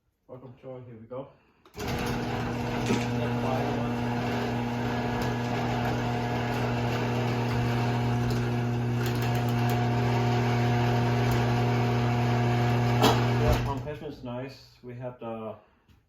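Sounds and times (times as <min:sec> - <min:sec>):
garage door opener motor humming: 0:01.8 - 0:14.0.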